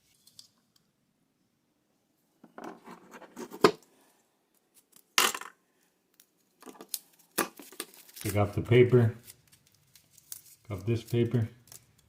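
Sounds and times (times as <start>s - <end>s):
cable rustling and scraping: 2.6s - 3.9s, 6.2s - 12.0s.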